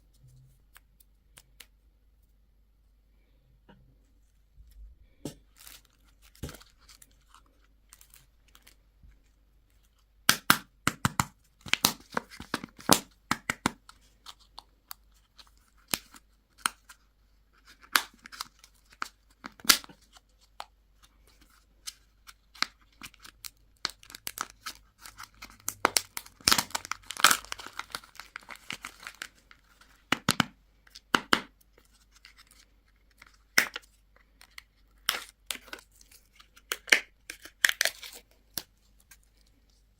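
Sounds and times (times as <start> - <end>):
wrappers tearing and crinkling: 23.1 - 29.6.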